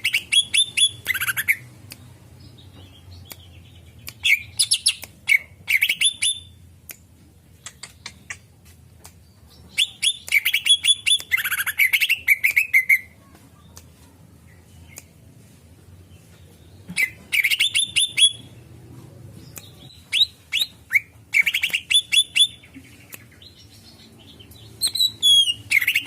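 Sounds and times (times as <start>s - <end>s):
bird chirping rapidly: 0.0s - 1.7s, 2.4s - 6.6s, 16.8s - 18.7s, 19.6s - 26.0s
sharp ticks: 6.8s - 9.2s.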